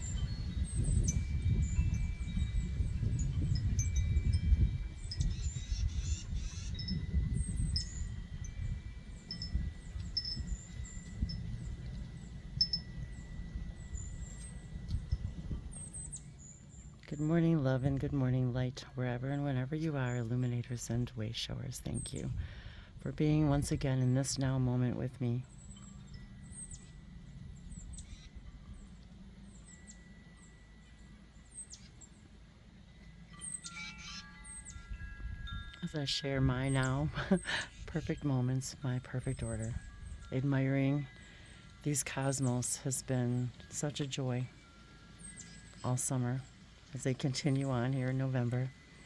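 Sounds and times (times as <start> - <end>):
small birds chirping: 0.0 - 17.9, 25.0 - 35.0, 36.6 - 49.0
low steady rumble: 0.0 - 33.9, 34.6 - 49.0
low steady hum: 0.0 - 49.0.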